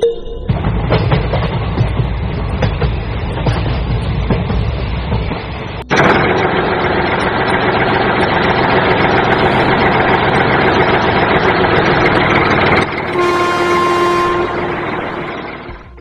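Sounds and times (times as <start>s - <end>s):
train rumbling: 0.4s - 16.0s
train horn blast: 13.0s - 16.0s.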